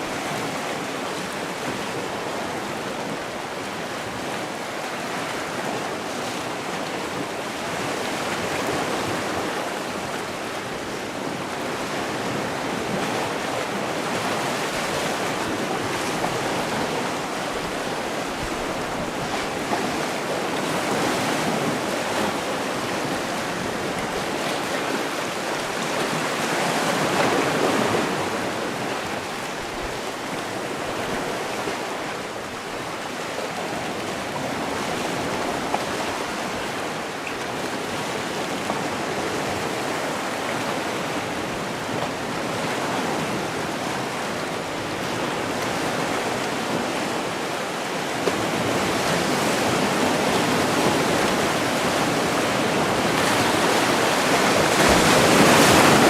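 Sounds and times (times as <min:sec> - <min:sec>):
sea waves washing onto shore: 0:00.0 - 0:56.0.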